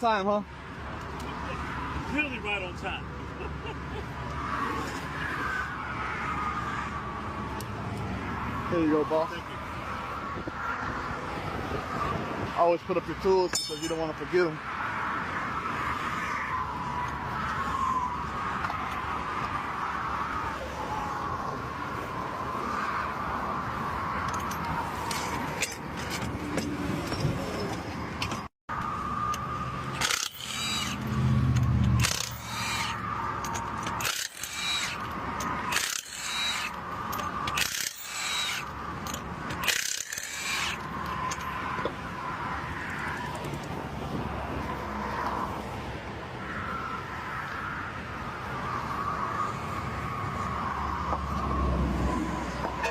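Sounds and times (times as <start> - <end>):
traffic noise: 0.0 - 52.9
metal hand tools clanking: 13.5 - 14.2.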